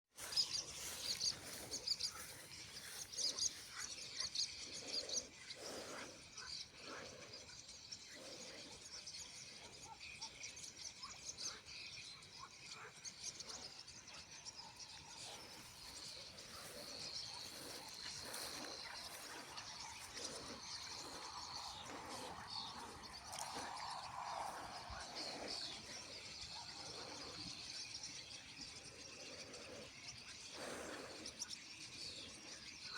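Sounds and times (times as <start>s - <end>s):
flock of birds chirping: 0.1s - 32.9s
person breathing heavily: 0.2s - 8.9s, 15.2s - 32.5s.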